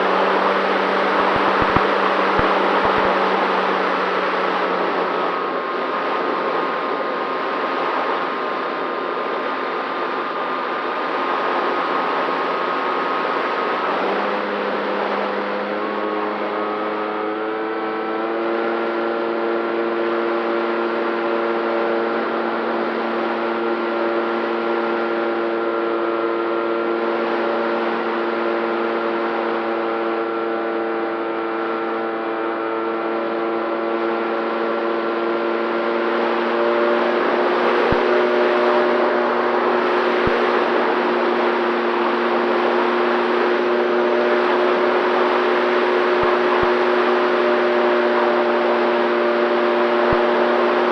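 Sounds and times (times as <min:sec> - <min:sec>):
wind noise on microphone: 0:00.0 - 0:05.2
model plane propeller droning: 0:00.0 - 0:50.9.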